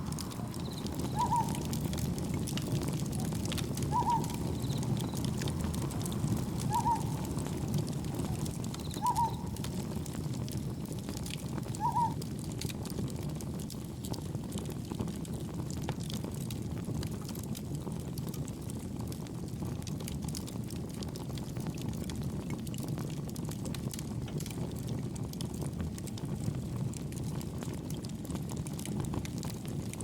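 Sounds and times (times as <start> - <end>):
gentle waves: 0.0 - 10.6
campfire crackling: 0.0 - 30.0
wind: 0.0 - 30.0
bird hooting: 0.3 - 1.8, 3.2 - 9.7, 11.8 - 12.2.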